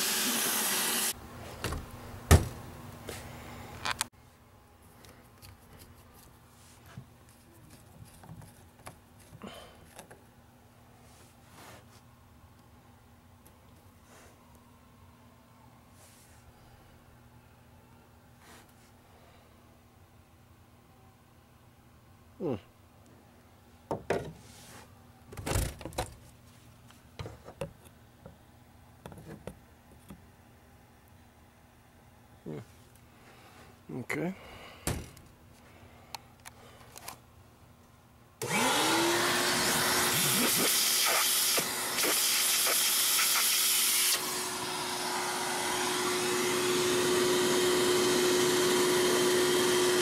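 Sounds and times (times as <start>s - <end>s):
tools knocking and clunking: 23.9s - 24.4s.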